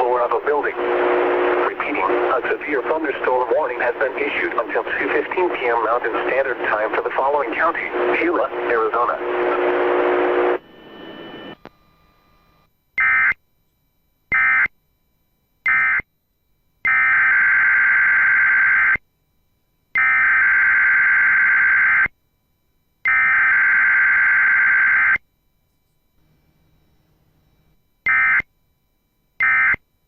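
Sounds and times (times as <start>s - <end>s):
digital data bursts screeching: 0.0s - 11.6s.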